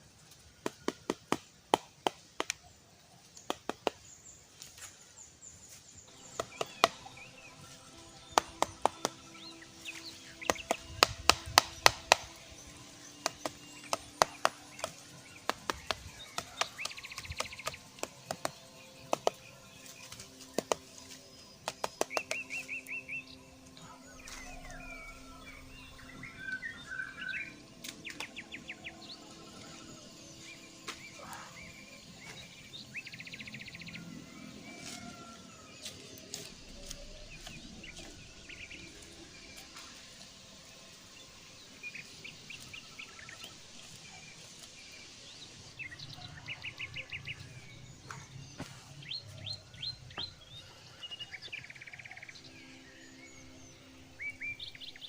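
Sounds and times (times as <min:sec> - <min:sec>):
birds chirping and trilling: 0:00.0 - 0:55.0
chopping knocks on wood: 0:10.4 - 0:12.4.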